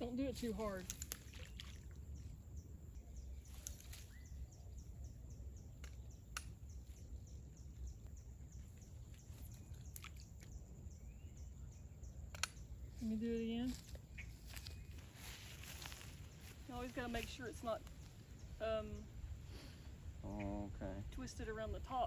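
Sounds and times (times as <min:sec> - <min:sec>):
sharp clicks: 0:05.8 - 0:06.6, 0:12.3 - 0:12.7.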